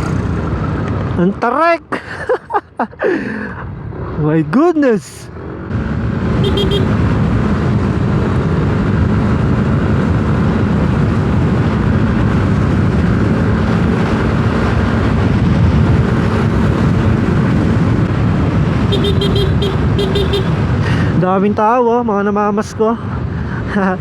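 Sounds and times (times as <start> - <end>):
wind rushing over microphone: 5.6 - 21.2
short horn beep: 6.4 - 6.9, 18.9 - 20.6
scooter engine running: 6.4 - 7.0, 18.8 - 20.6.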